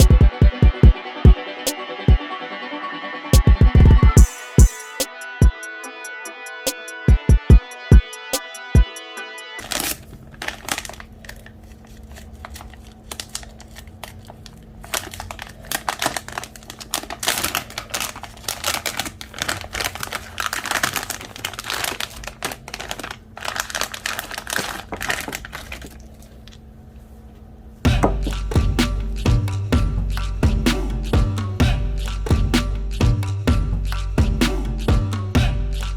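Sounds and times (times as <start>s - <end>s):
crinkling: 9.6s - 27.4s.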